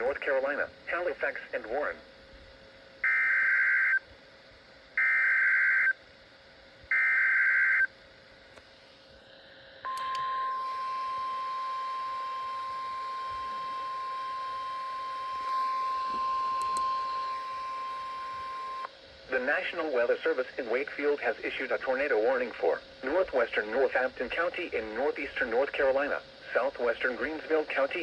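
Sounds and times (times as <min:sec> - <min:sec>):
steady warning alarm tone: 0:03.0 - 0:04.0, 0:05.0 - 0:06.0, 0:06.9 - 0:07.9, 0:09.8 - 0:18.9
harsh digital data bursts: 0:10.0 - 0:18.9.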